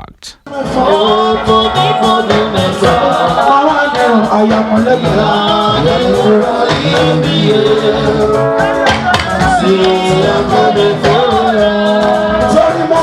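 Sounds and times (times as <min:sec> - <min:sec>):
music with steady beat: 0:00.5 - 0:13.0
person singing: 0:00.5 - 0:13.0.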